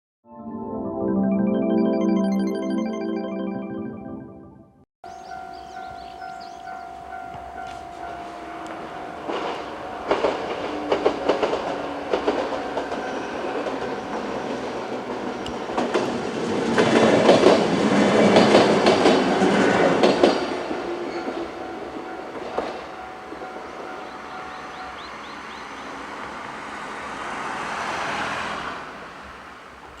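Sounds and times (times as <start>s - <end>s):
level crossing warning bell: 5.1s - 26.1s
train wheels clattering over rails: 7.4s - 25.6s.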